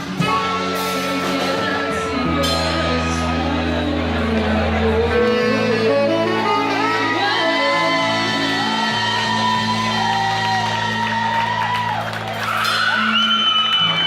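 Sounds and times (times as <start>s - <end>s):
person singing: 0.0s - 11.2s
live band music: 0.0s - 14.0s.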